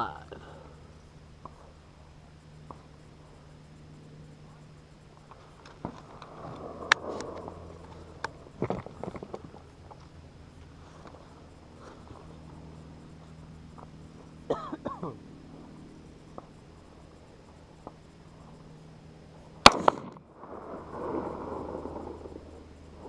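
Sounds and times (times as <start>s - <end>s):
lingering noise: 0.0s - 23.0s
gunshots: 19.6s - 20.2s.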